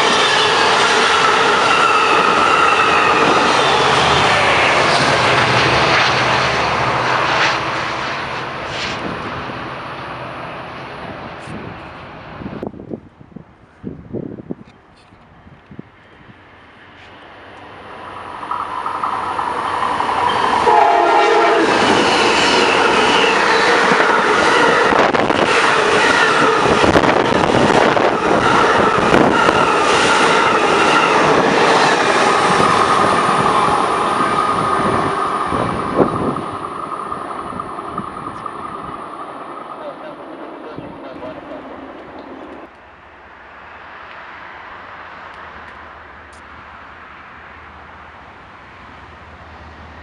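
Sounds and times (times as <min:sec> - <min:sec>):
passenger train passing at speed: 0:00.0 - 0:50.0
train horn: 0:20.3 - 0:31.2.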